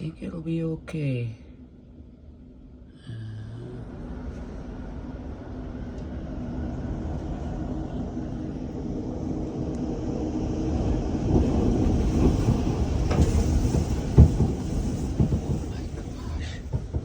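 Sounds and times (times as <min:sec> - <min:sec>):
storm wind roaring: 0:03.7 - 0:17.0.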